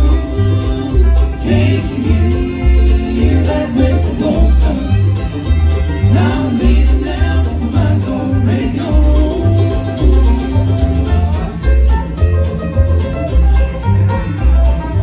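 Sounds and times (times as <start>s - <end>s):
person singing: 0.0s - 10.9s
banjo picking: 0.0s - 15.0s
guitar: 0.0s - 15.0s
upright bass low notes: 0.0s - 15.0s.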